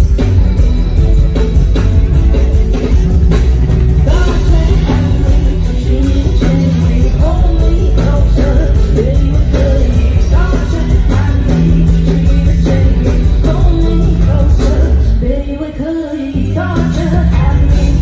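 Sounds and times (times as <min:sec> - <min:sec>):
pop-rock band playing: 0:00.0 - 0:18.0
woman singing: 0:04.0 - 0:18.0.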